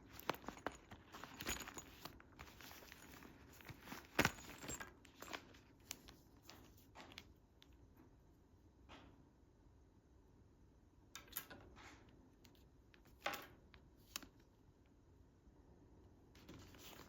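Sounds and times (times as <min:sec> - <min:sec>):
packaging rustling and crinkling: 0:00.0 - 0:06.7.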